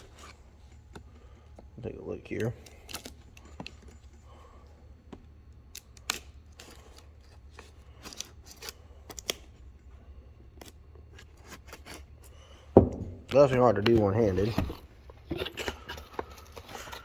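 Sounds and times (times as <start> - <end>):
tape and cardboard being cut: 10.5 - 12.3.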